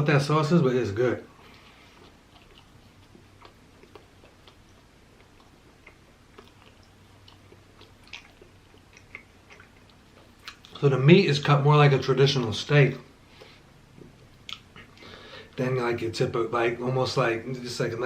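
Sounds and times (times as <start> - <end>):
close-up chewing: 1.3 - 10.8.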